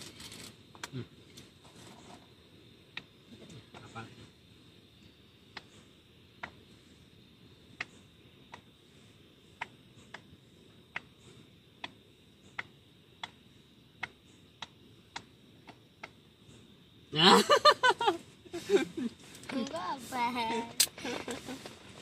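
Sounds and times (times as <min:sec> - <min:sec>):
faint steady hiss: 0:00.0 - 0:22.0
sharp single clicks: 0:11.8 - 0:13.4, 0:14.0 - 0:16.2.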